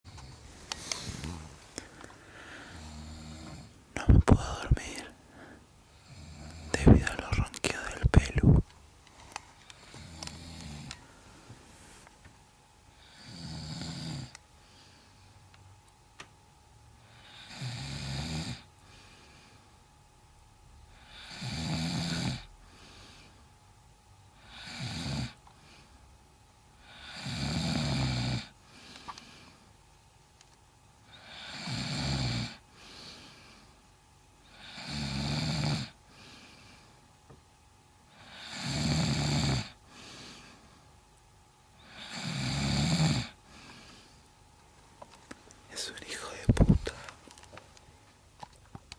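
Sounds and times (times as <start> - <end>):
quiet breathing: 0.1 - 8.7, 14.5 - 15.5, 18.8 - 19.8, 22.1 - 23.6, 28.5 - 29.8, 32.6 - 34.7, 35.9 - 37.1, 39.7 - 41.0, 43.2 - 44.4, 45.4 - 48.2
loud rasping snoring: 17.3 - 18.6, 21.0 - 22.5, 24.5 - 25.4, 26.9 - 28.5, 31.2 - 32.6, 34.6 - 36.0, 38.2 - 39.8, 41.9 - 43.4.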